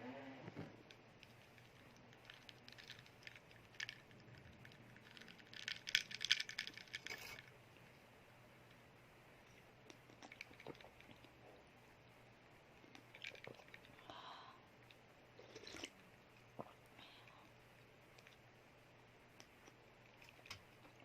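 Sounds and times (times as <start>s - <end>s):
chewing crunchy food: 9.5s - 11.4s, 12.8s - 14.0s, 14.9s - 16.8s.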